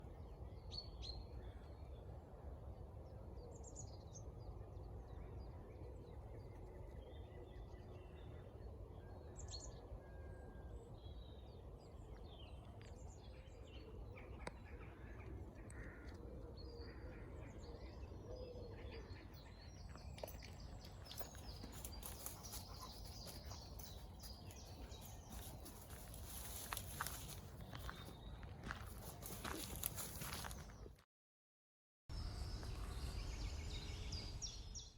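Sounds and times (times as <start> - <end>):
wild birds chirping: 3.4 - 30.9
footsteps on dry ground: 19.7 - 31.0.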